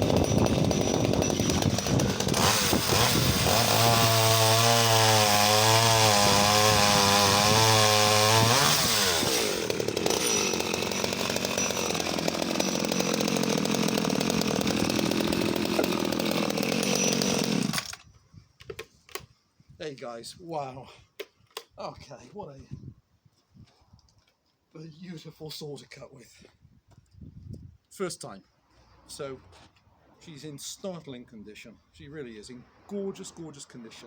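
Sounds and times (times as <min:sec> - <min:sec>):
chainsaw cutting wood: 0:00.0 - 0:18.1.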